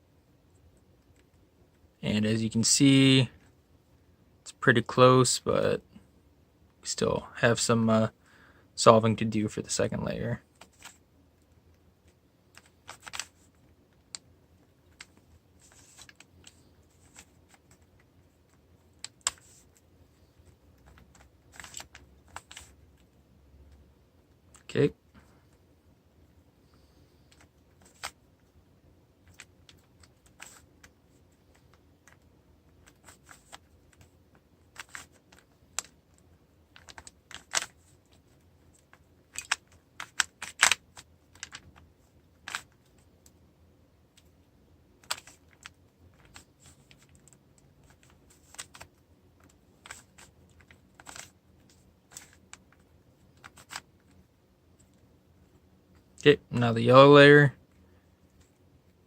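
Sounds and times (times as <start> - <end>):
puzzle cube clicking: 18.9 - 19.8, 20.4 - 22.7, 38.8 - 42.9, 45.0 - 53.9.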